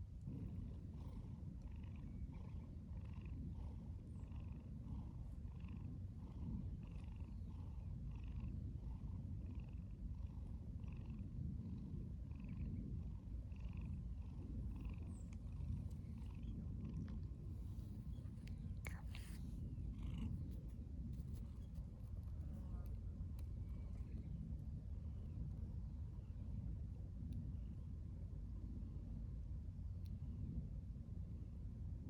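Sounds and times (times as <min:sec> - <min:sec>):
cat purring: 0:00.1 - 0:25.5.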